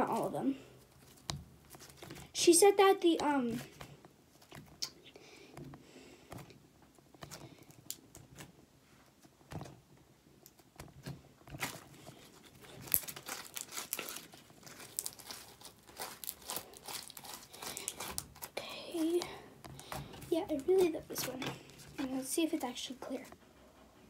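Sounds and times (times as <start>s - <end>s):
slime and plastic packaging crinkling: 0.0s - 4.8s, 10.4s - 22.9s.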